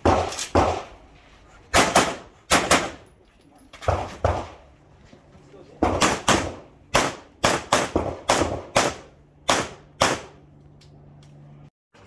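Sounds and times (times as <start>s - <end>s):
rapid pistol shots: 0.0s - 1.0s, 1.7s - 3.0s, 3.8s - 4.6s, 5.8s - 10.4s.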